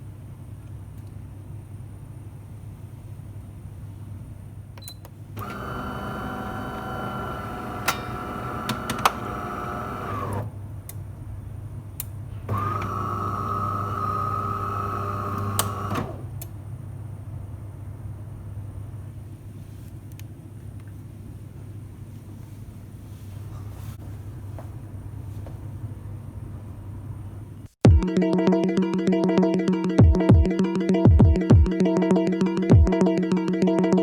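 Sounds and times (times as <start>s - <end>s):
coffee machine motor humming: 5.4s - 10.5s, 12.5s - 16.4s.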